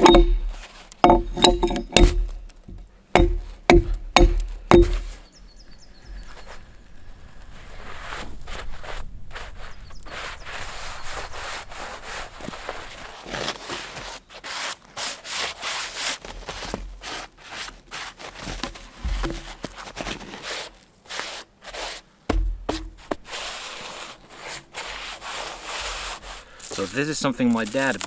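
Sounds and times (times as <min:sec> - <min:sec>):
low thump: 0:00.0 - 0:05.2, 0:22.3 - 0:22.9
hand tool rasping a log: 0:00.0 - 0:05.3, 0:10.1 - 0:28.0.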